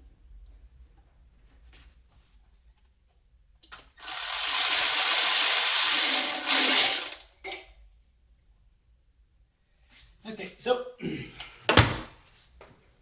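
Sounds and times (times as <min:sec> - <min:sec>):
power tool running: 0:04.0 - 0:07.3.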